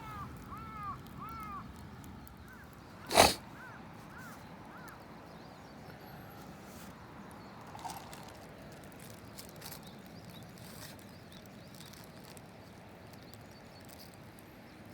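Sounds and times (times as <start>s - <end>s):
crow cawing: 0.0s - 1.7s, 2.4s - 5.0s
loud sharp crack: 3.1s - 3.4s.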